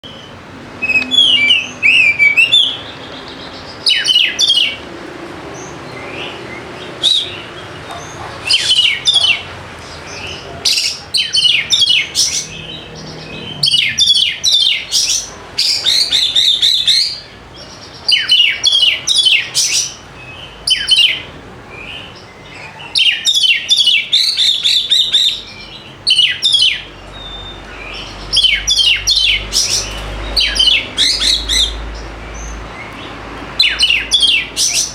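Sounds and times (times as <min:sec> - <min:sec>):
bird singing whistled notes: 0:00.0 - 0:03.1, 0:03.8 - 0:04.8, 0:10.7 - 0:17.3, 0:18.1 - 0:21.3, 0:23.0 - 0:31.8, 0:33.6 - 0:34.9.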